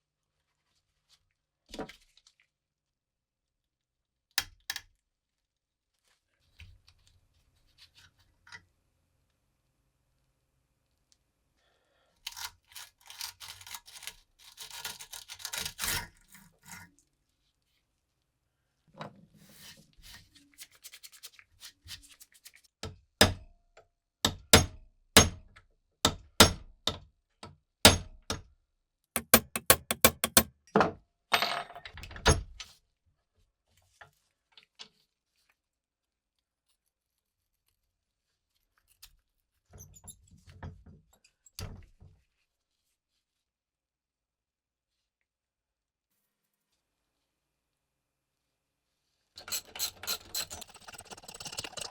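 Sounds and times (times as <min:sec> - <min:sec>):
fast taps: 0:29.2 - 0:30.5
sharp loud knocks: 0:29.2 - 0:30.5.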